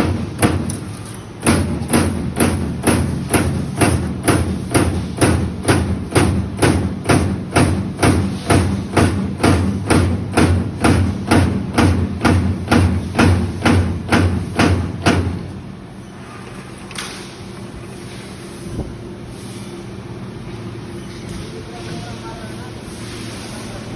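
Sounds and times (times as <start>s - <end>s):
punch press strikes: 1.4s - 15.4s.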